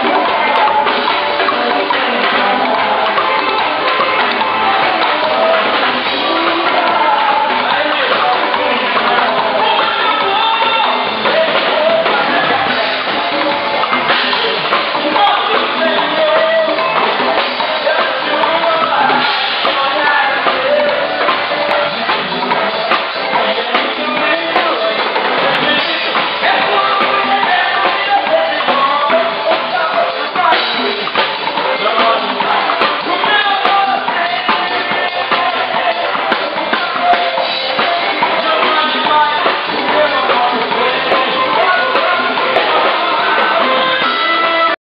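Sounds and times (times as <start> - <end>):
drum kit steady beat: 0.0 - 44.8
live band music: 0.0 - 44.8.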